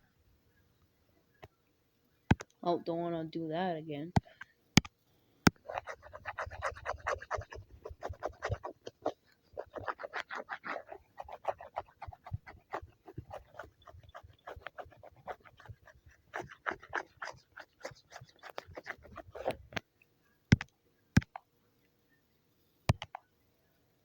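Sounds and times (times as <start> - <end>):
pen scratching on tablet screen: 5.5 - 19.7.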